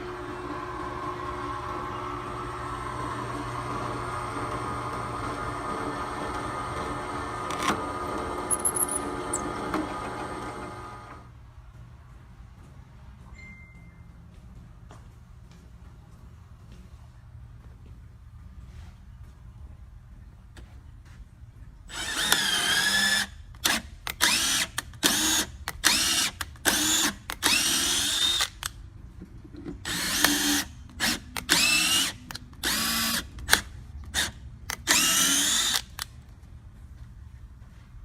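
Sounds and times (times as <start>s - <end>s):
power drill motor whine: 0.0s - 11.3s, 21.9s - 28.7s, 29.8s - 36.1s
steady low hum: 10.8s - 24.1s.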